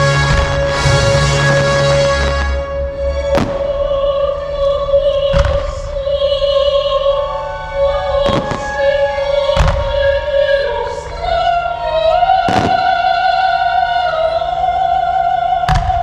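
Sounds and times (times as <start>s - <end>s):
opera singer holding long notes: 0.0s - 16.0s
firework bursts: 3.1s - 5.9s, 8.1s - 10.1s, 12.5s - 13.3s.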